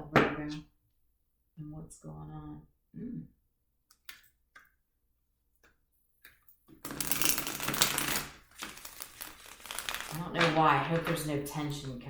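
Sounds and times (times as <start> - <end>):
rapid card shuffling: 6.9 - 11.3.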